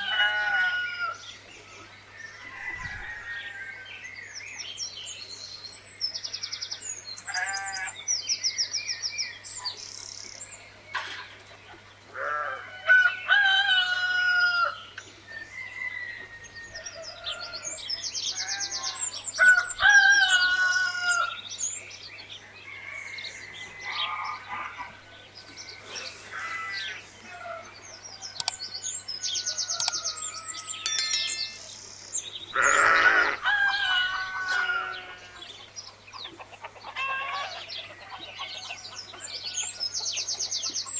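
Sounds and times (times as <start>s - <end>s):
small birds chirping in trills: 14.8s - 33.1s, 34.9s - 40.9s
rooster crowing: 32.6s - 35.2s
chickens clucking: 35.6s - 39.4s.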